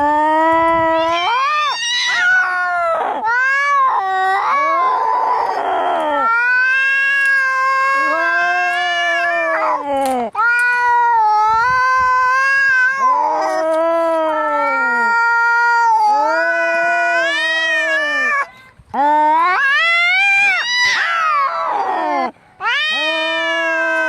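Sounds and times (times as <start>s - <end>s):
cats yowling: 0.5s - 24.0s.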